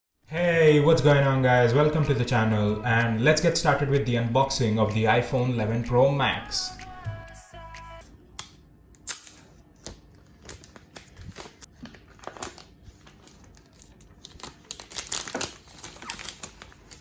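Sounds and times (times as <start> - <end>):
plastic shrink-wrap crinkling: 9.9 - 17.0.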